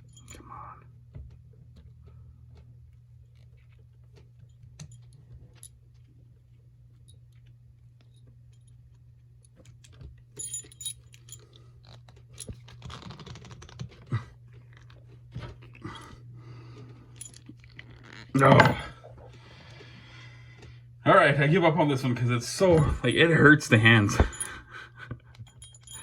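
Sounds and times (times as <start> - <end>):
light metallic clicks and clinks: 0.0 - 0.6, 9.6 - 11.6, 22.7 - 24.7, 25.3 - 26.0
steady low hum: 0.0 - 12.9, 13.8 - 26.0.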